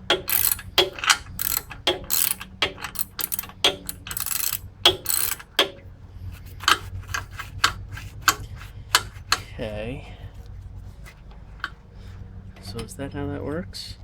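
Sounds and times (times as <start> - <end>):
ratchet wrench clicking: 0.0 - 9.6.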